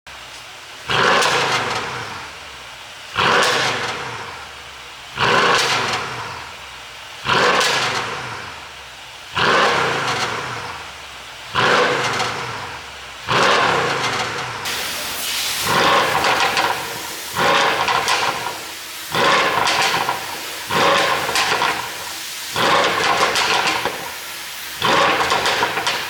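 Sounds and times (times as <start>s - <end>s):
car engine revving: 5.2s - 6.2s, 9.3s - 10.9s, 11.5s - 26.0s
exhaust pops and crackle: 15.7s - 26.0s.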